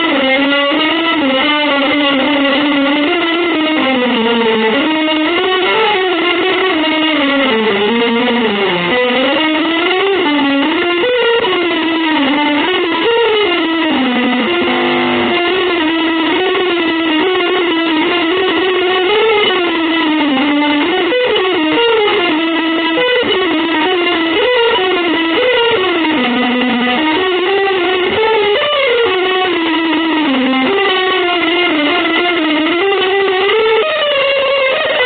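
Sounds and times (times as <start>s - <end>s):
electric guitar melody: 0.0s - 35.0s.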